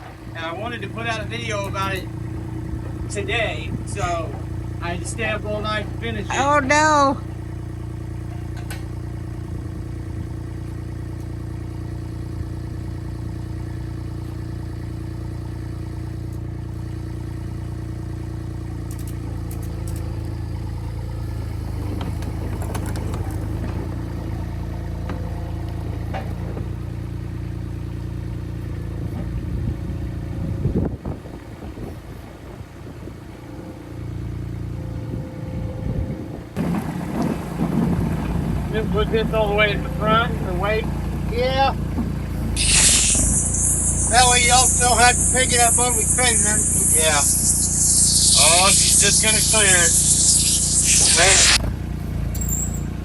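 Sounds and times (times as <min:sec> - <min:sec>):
engine idling: 0:00.0 - 0:26.6, 0:36.6 - 0:42.6.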